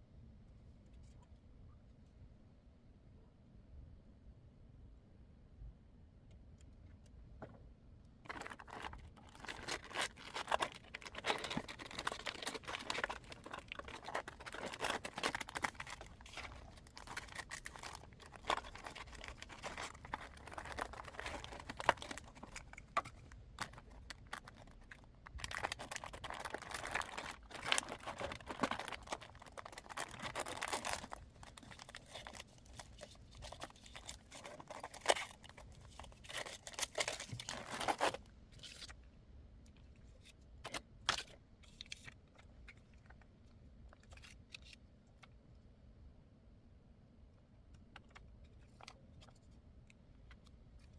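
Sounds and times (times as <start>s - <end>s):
material crinkling and rustling: 8.3s - 39.0s.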